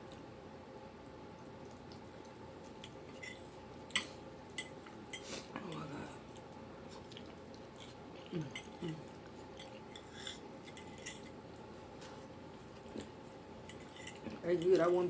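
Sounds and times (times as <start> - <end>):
utensils clinking against dishes: 3.1 - 5.9, 8.5 - 11.4, 13.6 - 15.0.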